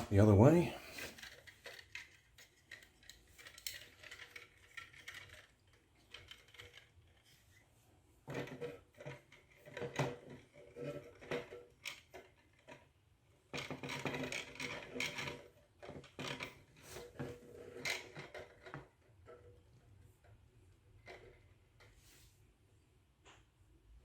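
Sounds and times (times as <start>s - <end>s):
plastic clicks and rattles: 1.0s - 7.5s, 8.3s - 12.9s, 13.5s - 20.4s.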